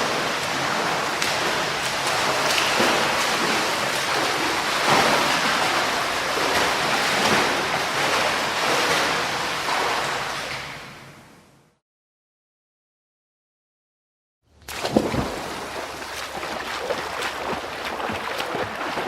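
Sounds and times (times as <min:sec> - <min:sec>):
water splashing from swimming: 0:00.0 - 0:10.7, 0:14.6 - 0:19.0.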